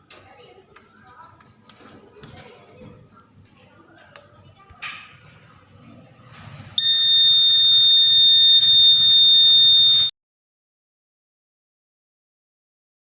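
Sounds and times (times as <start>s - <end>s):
door alarm high-pitched tone: 6.8s - 10.1s.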